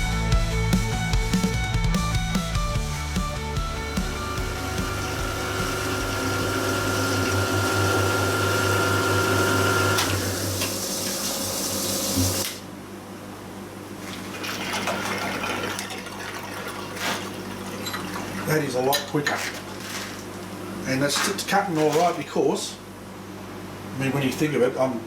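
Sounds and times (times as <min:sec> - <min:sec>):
milling machine hum: 0:03.3 - 0:24.0
coolant hiss: 0:03.8 - 0:12.7, 0:13.9 - 0:18.9.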